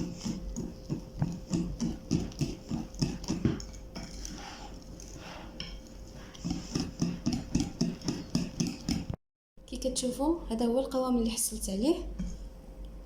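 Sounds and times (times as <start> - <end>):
cake batter being stirred: 0.0 - 9.2.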